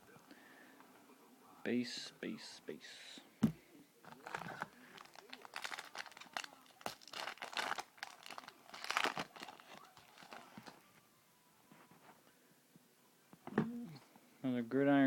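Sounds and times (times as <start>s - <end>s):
foil wrapper crinkling: 4.1s - 10.8s.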